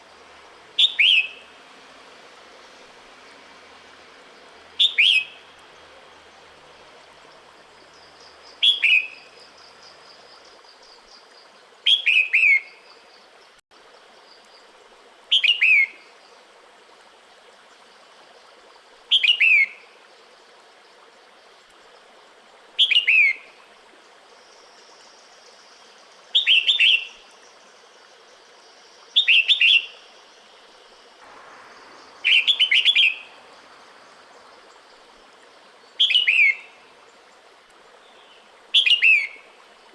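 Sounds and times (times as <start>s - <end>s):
faint steady hiss: 0.0s - 39.9s
bird calling whistled notes: 0.8s - 1.5s, 4.8s - 5.5s, 8.6s - 9.2s, 31.6s - 34.9s, 36.0s - 36.7s, 38.8s - 39.4s.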